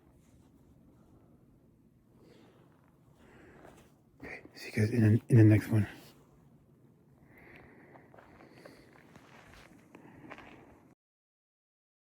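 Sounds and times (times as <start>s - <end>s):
footsteps in snow: 8.1s - 10.7s.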